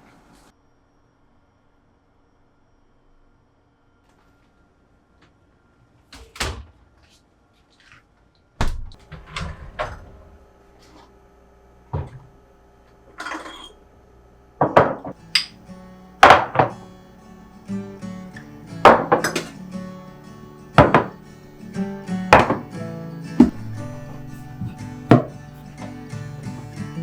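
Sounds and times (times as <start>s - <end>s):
kitchen items knocking and clinking: 14.6s - 15.6s, 16.2s - 16.8s, 18.8s - 19.6s, 20.8s - 21.2s, 22.3s - 22.8s, 23.4s - 25.5s
soft background music: 15.2s - 27.0s.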